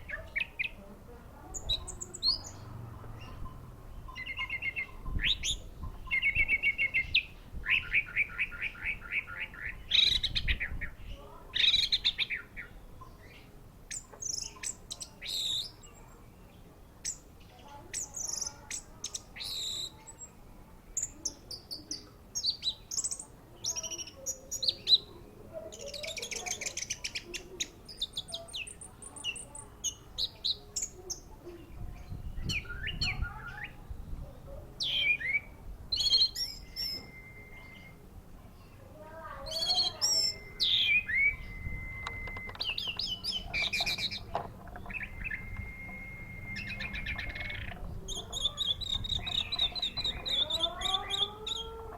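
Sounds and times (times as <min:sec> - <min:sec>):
thrush singing: 0:39.4 - 0:51.9.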